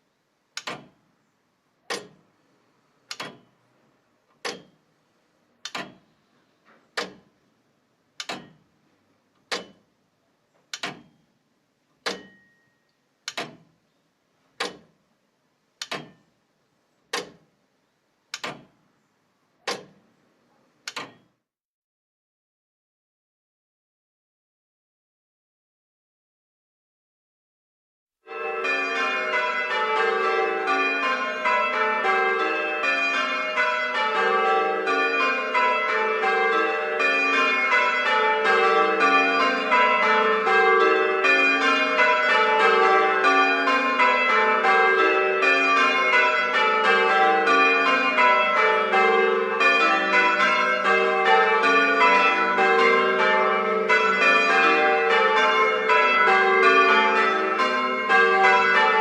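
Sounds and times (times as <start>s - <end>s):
church bells ringing changes: 28.3s - 59.0s.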